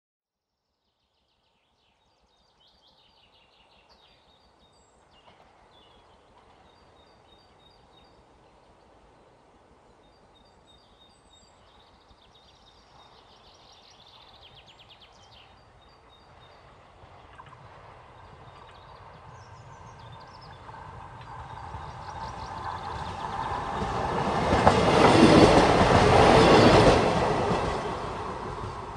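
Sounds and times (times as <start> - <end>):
train rumble: 5.0 - 9.9, 15.3 - 28.9.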